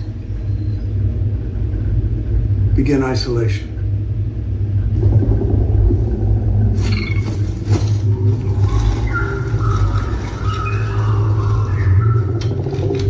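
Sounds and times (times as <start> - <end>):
deep subwoofer rumble: 3.7 - 13.0
thin wavering tones: 4.8 - 13.0.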